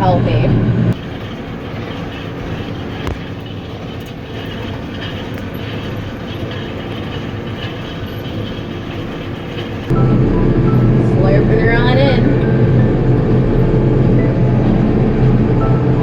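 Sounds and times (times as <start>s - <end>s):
tractor running: 0.7s - 16.0s
baler mechanical clatter: 0.9s - 10.0s.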